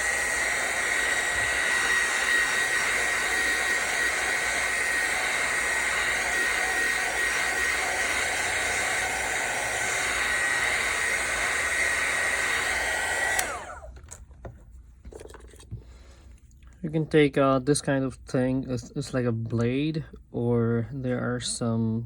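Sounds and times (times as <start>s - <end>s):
hot-air blower whirring: 0.0s - 14.0s.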